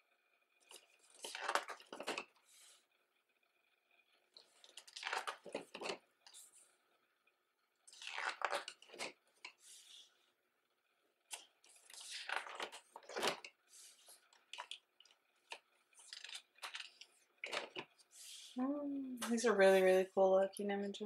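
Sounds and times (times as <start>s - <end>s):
paper rustling: 0.6s - 2.8s, 4.4s - 6.7s, 7.9s - 10.2s, 11.3s - 18.6s.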